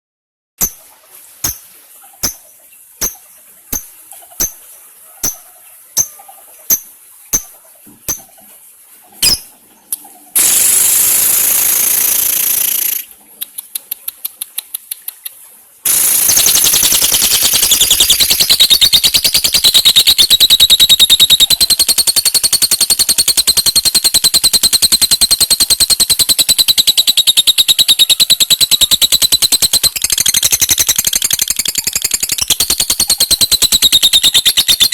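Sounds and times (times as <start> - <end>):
lovebird chirping and chattering: 2.2 - 4.6, 5.2 - 8.3, 9.2 - 9.5, 10.4 - 13.1, 15.9 - 34.9.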